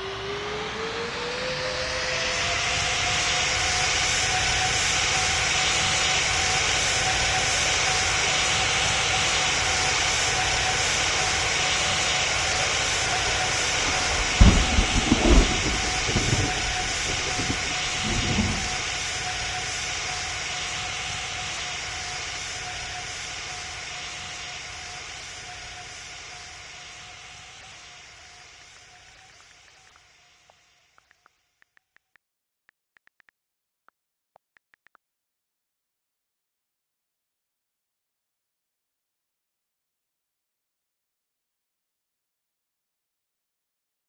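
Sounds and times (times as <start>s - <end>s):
jet engines whining and roaring: 0.0s - 28.7s
loud low thumps: 13.6s - 19.0s.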